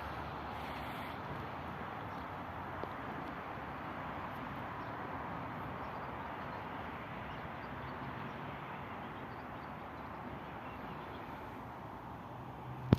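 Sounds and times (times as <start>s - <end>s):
outdoor background hiss: 0.0s - 5.8s.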